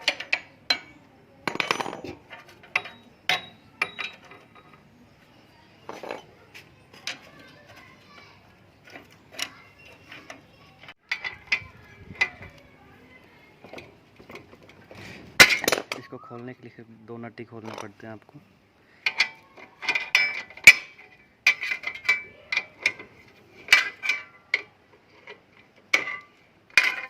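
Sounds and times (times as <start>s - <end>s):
wrench clinking on metal nuts: 0.0s - 4.9s, 19.0s - 25.3s, 25.9s - 27.0s.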